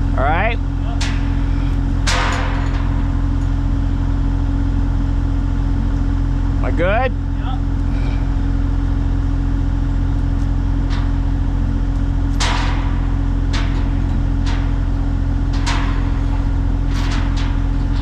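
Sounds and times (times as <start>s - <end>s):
excavator engine running: 0.0s - 18.0s
metal knocks and clanks: 0.7s - 3.7s, 10.8s - 18.0s.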